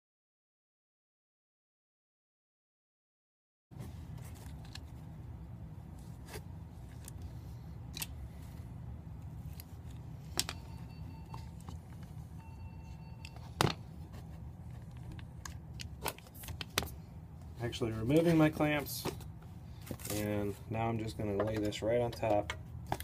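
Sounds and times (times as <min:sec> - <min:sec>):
low hum: 0:03.8 - 0:20.7.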